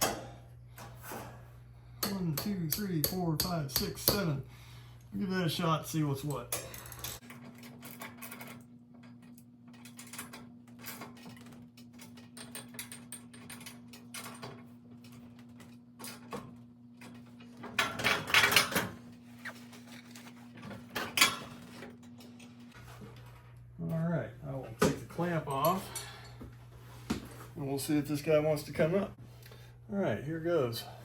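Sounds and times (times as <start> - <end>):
steady low hum: 0.0 - 7.2, 19.0 - 31.0
metal tools clinking and clanking: 6.3 - 8.6, 25.2 - 26.4.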